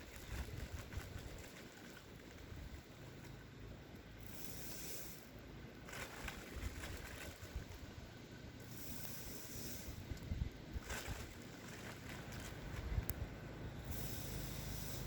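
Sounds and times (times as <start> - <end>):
wind gusting on microphone: 0.0 - 1.6, 9.6 - 14.3.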